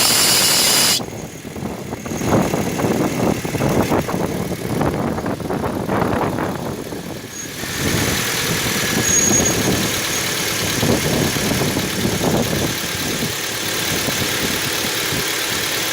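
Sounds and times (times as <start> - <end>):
faint thin whistle: 0.0 - 1.0
high hiss: 0.0 - 1.0
car engine running: 0.0 - 15.9.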